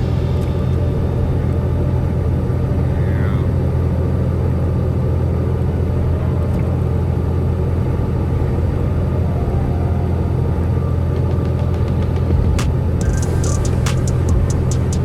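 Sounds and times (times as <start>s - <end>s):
road noise: 0.0s - 15.0s
truck engine rumble: 0.0s - 15.0s.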